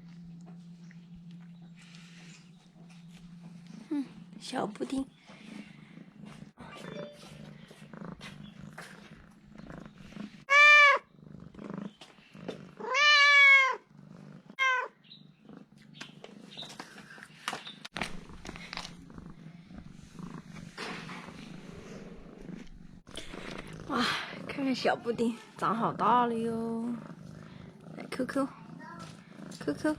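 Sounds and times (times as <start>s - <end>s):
cat purring: 0.0s - 29.9s
cat meowing: 10.5s - 11.1s, 12.8s - 13.8s, 14.6s - 15.0s.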